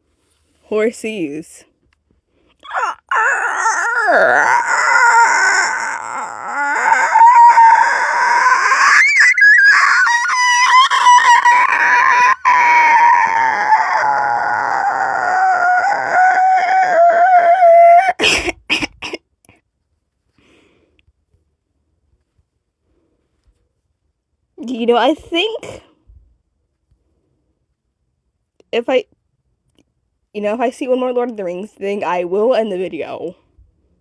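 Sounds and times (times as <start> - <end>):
person making creature noise: 2.6 - 18.6.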